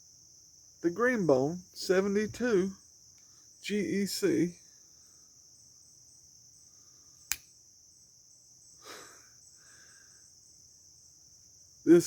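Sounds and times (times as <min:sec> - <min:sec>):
crickets chirping: 0:00.0 - 0:12.0
sharp click: 0:07.3 - 0:07.5.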